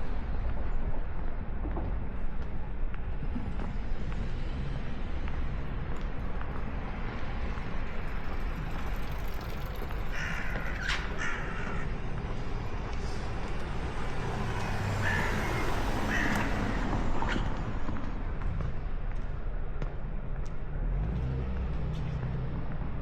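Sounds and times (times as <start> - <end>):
outdoor background noise: 0.0 - 23.0
crow cawing: 10.1 - 11.9, 15.0 - 16.8.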